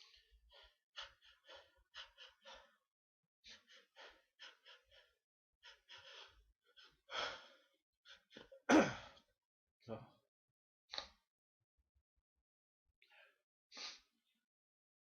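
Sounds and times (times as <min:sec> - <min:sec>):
quick gasping breaths: 0:00.0 - 0:02.8, 0:03.5 - 0:09.3, 0:13.1 - 0:14.2
person sneezing: 0:08.7 - 0:09.0.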